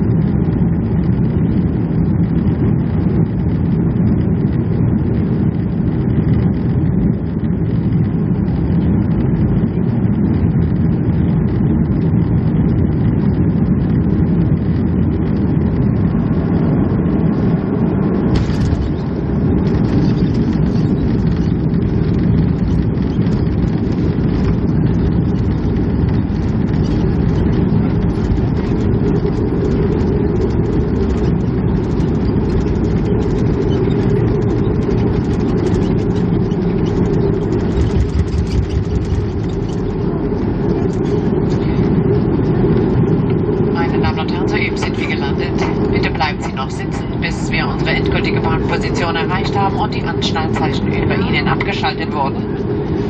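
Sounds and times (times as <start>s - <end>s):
jet engines rumbling: 0.0s - 53.0s
touchdown jolt: 18.2s - 21.5s, 31.0s - 40.0s.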